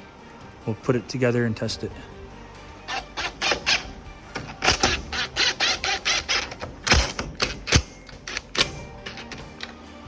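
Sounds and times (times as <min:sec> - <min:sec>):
plastic clicking and rattling: 0:06.4 - 0:09.8.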